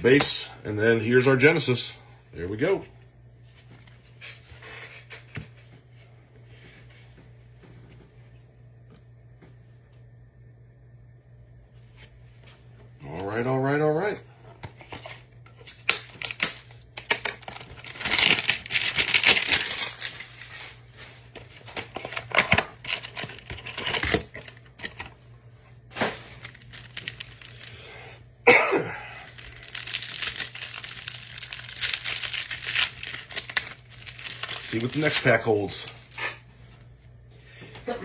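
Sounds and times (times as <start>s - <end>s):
cards handled with rustles: 14.4s - 27.9s, 29.2s - 37.0s
foil wrappers crinkling and tearing: 14.8s - 25.2s, 25.8s - 28.2s, 28.9s - 36.5s.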